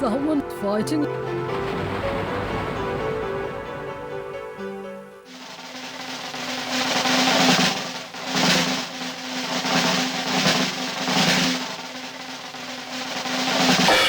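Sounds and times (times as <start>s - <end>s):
snare drum roll: 5.3s - 14.0s.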